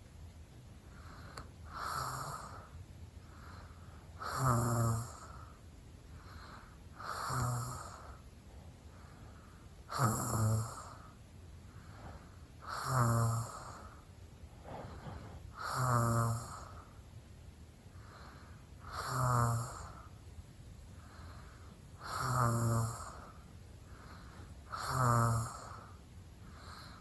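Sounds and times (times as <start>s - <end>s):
quiet breath out: 0.8s - 17.1s, 17.9s - 27.0s
loud rasping snores: 1.7s - 2.7s, 4.2s - 5.5s, 6.4s - 8.2s, 9.9s - 11.1s, 12.6s - 14.0s, 15.6s - 16.8s, 18.0s - 20.1s, 22.0s - 23.4s, 24.0s - 26.0s.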